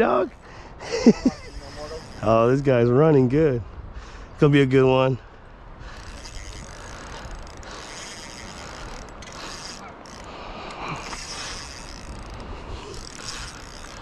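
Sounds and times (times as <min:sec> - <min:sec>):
fishing reel clicking and whirring: 0:01.2 - 0:02.6, 0:05.8 - 0:14.0.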